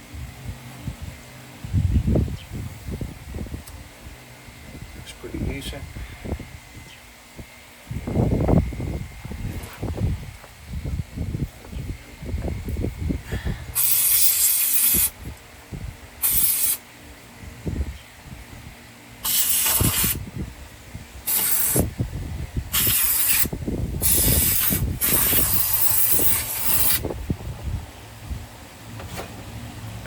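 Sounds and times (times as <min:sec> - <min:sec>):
pressurised spray hissing: 0:13.3 - 0:15.2, 0:16.2 - 0:16.8, 0:19.2 - 0:20.2, 0:21.2 - 0:21.9, 0:22.7 - 0:27.1.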